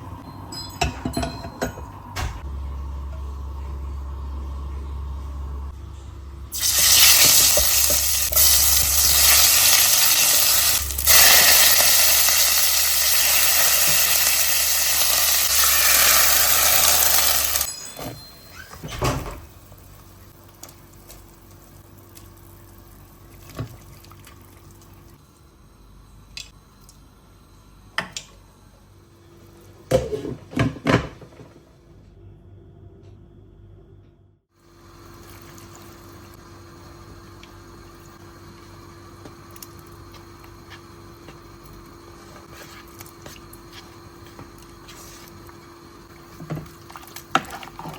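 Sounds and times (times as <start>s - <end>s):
dishes and utensils clinking: 0.5s - 2.4s, 15.6s - 19.2s.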